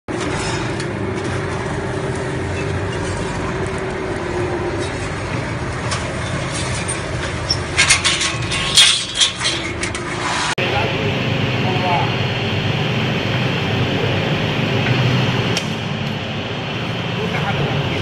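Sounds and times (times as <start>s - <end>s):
sharp metal clatters: 6.2s - 10.2s
machine motor hum: 10.6s - 18.0s.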